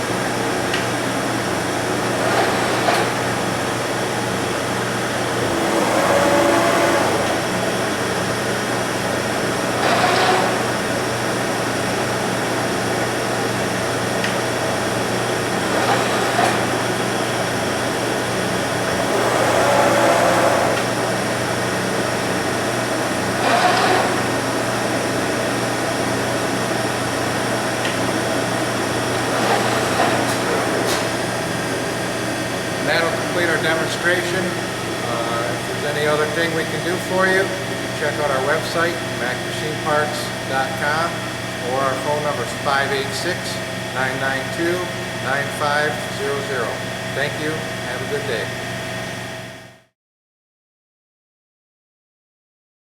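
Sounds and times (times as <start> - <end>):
machine tool humming: 0.0 - 49.3
drilling noise swell: 5.4 - 7.6, 9.6 - 11.0, 29.0 - 31.6.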